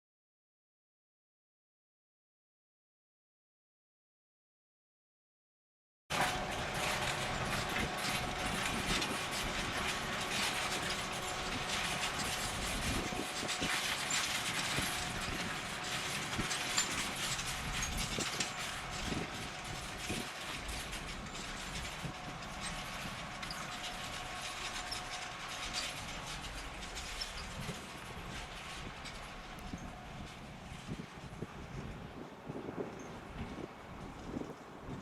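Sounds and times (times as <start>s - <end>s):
clicks and rattles from plough: 6.1s - 31.4s
tractor diesel engine running: 6.1s - 32.8s.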